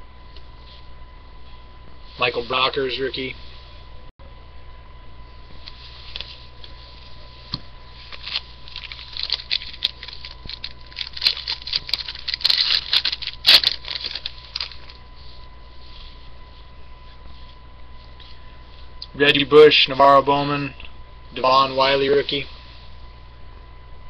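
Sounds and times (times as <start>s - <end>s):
foil pack crinkling: 7.9s - 15.1s.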